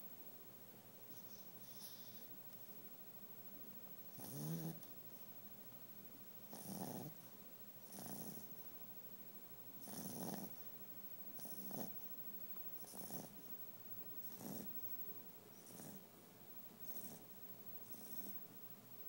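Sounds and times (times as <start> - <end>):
dog snoring: 1.2 - 2.3, 4.1 - 4.9, 6.5 - 8.6, 9.8 - 10.7, 11.3 - 12.1, 12.8 - 13.5, 14.2 - 14.8, 15.5 - 16.0, 16.8 - 18.4.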